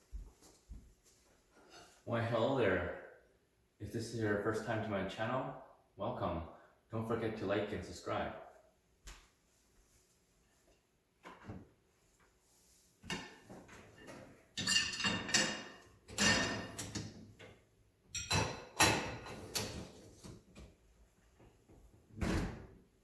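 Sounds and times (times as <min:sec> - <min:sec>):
kitchen hardware clattering: 0:13.0 - 0:17.2, 0:18.1 - 0:20.0.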